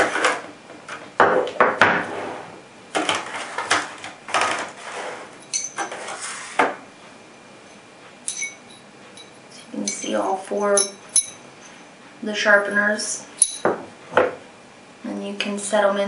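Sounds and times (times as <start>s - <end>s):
ringing clink: 5.4s - 5.8s, 8.3s - 11.8s, 13.4s - 13.7s
metal rods knocking and clattering: 5.5s - 6.0s, 8.3s - 11.4s, 13.4s - 13.8s.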